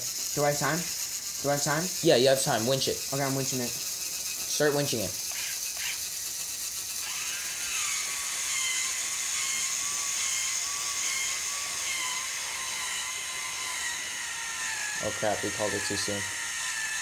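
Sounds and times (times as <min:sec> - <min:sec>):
steady high hiss: 0:00.0 - 0:07.2
electric winch motor whining: 0:00.0 - 0:17.0.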